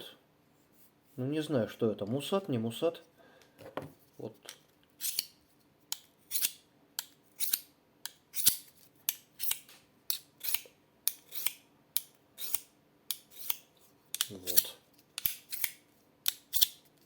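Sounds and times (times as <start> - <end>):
knife scraping through sharpener: 5.0 - 5.3, 6.3 - 6.6, 7.4 - 7.7, 8.3 - 8.7, 9.4 - 11.6, 12.4 - 13.6, 14.2 - 16.8.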